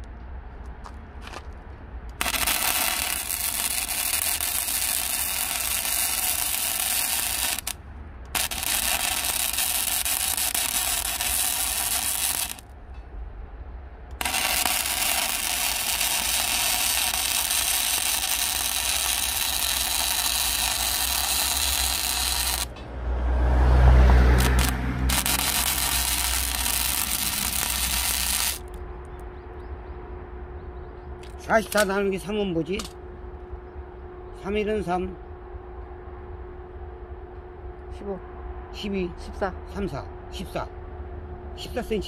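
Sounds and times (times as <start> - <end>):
arc welding crackling hiss: 2.2 - 12.7, 14.2 - 22.7, 24.3 - 28.8, 31.6 - 31.9.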